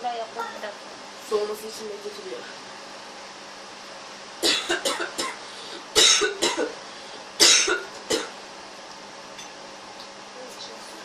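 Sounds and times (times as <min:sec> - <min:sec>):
person coughing harshly: 0:04.4 - 0:06.8, 0:07.4 - 0:08.4.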